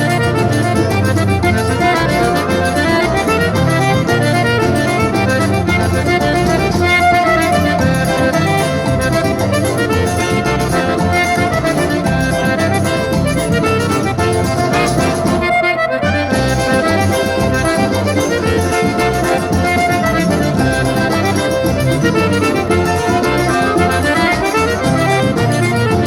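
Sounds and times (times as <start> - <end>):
instrumental accordion dance music: 0.0 - 26.0.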